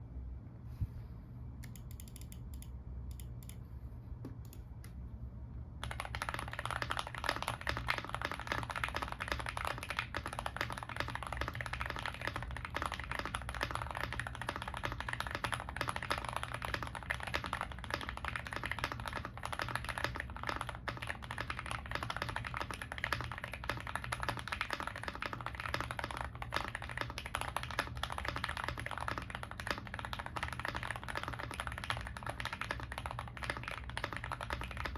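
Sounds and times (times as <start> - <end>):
mechanical keyboard typing: 1.6 - 3.6, 5.8 - 34.9.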